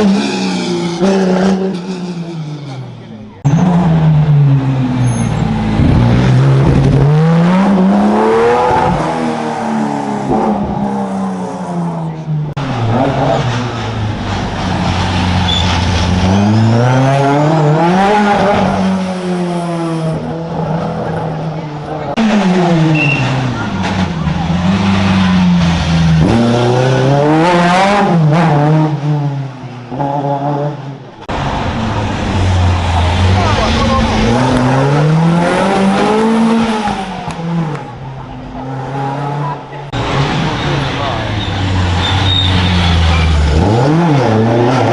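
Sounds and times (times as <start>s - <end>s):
rally car engine accelerating: 0.0s - 44.9s
car engine accelerating hard: 29.9s - 44.9s.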